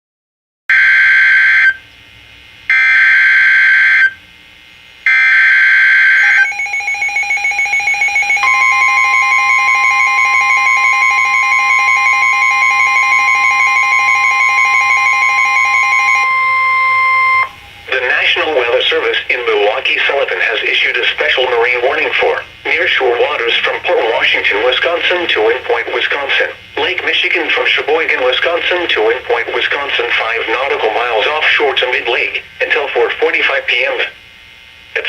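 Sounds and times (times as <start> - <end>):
steady warning alarm tone: 0.7 - 35.0
buzzy data bursts: 2.2 - 35.0
pulsing beep: 5.1 - 18.4.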